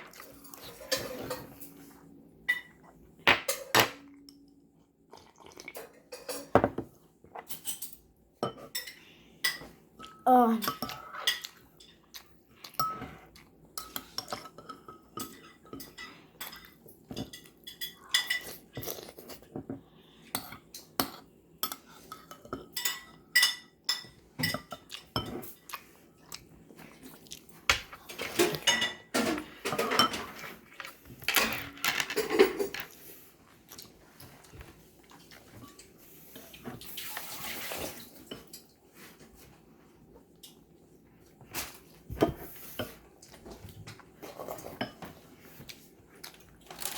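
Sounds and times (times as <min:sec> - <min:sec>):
cutlery clinking against a bowl: 0:00.0 - 0:01.9, 0:07.4 - 0:19.4, 0:20.4 - 0:25.9, 0:27.7 - 0:33.0, 0:41.5 - 0:46.9.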